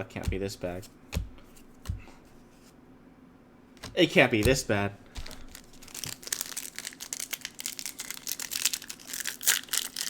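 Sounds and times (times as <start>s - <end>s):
foil wrapper crinkling and tearing: 5.2s - 10.0s.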